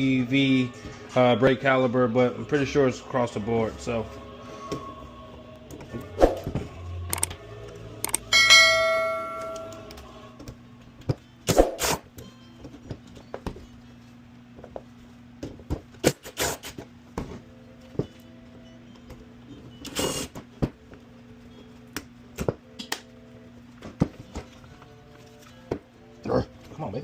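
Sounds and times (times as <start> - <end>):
ringing metallic clang: 8.3 - 9.9.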